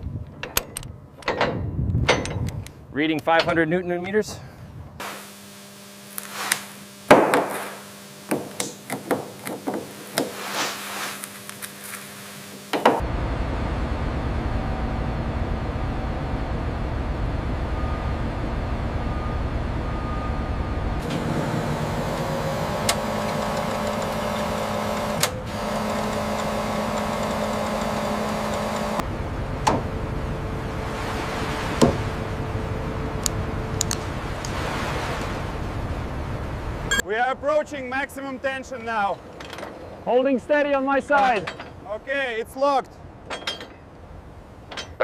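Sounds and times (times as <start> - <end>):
metal knocks and clanks: 0.4 - 2.6, 41.2 - 41.9, 43.2 - 43.9, 44.6 - 45.0
steady hum: 4.8 - 37.0
heavy machinery rumbling: 12.8 - 37.0.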